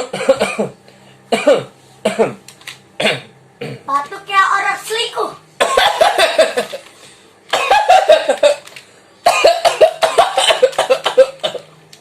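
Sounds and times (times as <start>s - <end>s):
person coughing: 0.0s - 2.4s, 3.0s - 3.9s, 5.6s - 6.8s, 7.5s - 11.7s.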